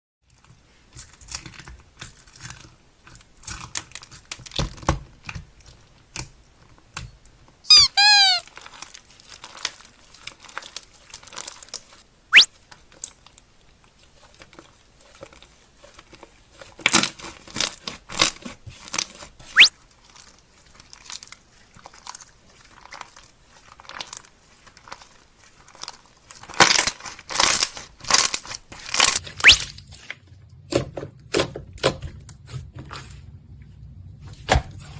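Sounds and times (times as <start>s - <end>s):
quick rising whistle: 7.7s - 8.4s, 29.4s - 29.6s.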